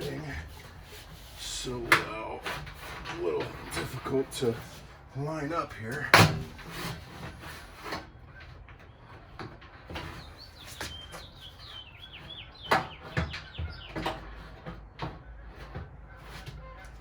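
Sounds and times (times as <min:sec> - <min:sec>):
bird chirping: 0:09.9 - 0:14.5.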